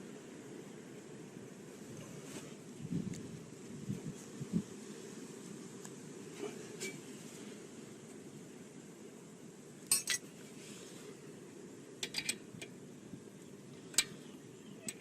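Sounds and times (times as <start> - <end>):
metal tools clinking: 9.9 - 10.3.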